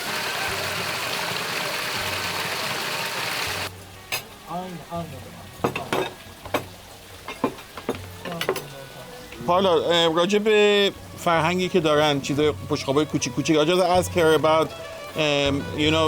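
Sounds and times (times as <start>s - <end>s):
dense steady hiss: 0.0s - 16.0s.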